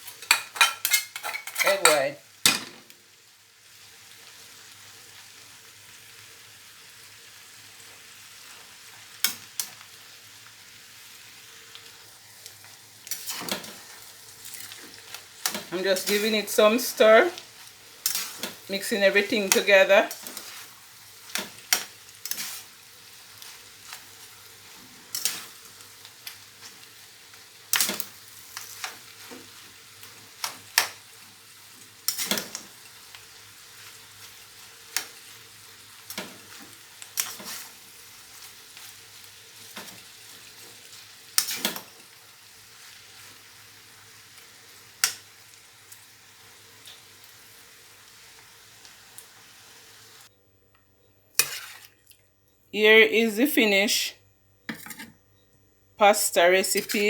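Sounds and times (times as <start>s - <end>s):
pasta sizzling in a frying pan: 0.0s - 50.3s, 51.3s - 52.0s
utensil scraping and knocking pan: 54.7s - 55.2s.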